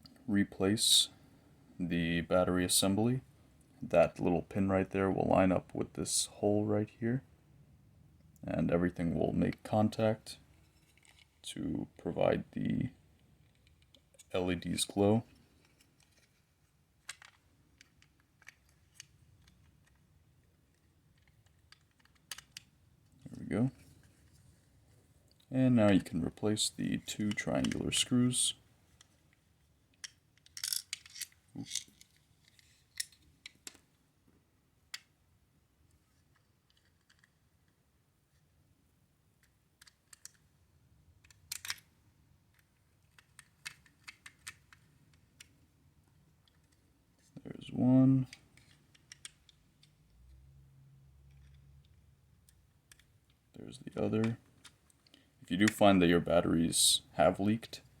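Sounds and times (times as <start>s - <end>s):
plastic toy parts clicking: 15.6s - 22.8s, 27.2s - 27.9s, 29.0s - 33.8s, 35.9s - 37.8s, 39.4s - 40.6s, 41.2s - 41.9s, 42.5s - 45.6s, 46.4s - 46.9s, 48.3s - 50.0s, 51.3s - 53.4s.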